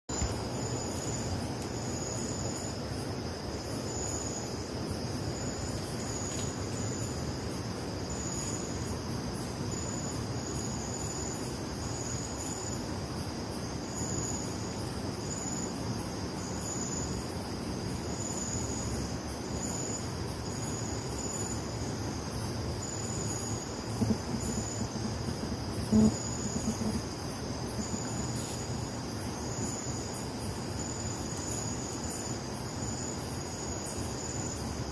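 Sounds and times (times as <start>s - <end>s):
cricket high trill: 0.1s - 34.9s
cricket short chirps: 0.1s - 34.9s.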